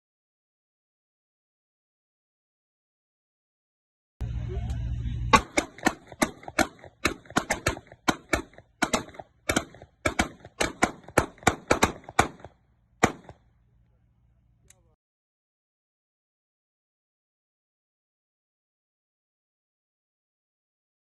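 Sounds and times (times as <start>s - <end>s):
gunshots: 5.3s - 13.4s.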